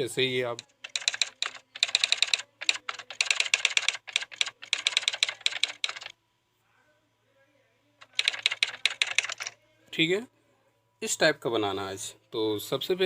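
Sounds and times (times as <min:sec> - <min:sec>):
keyboard typing clicks: 0:00.6 - 0:06.1, 0:08.0 - 0:09.6.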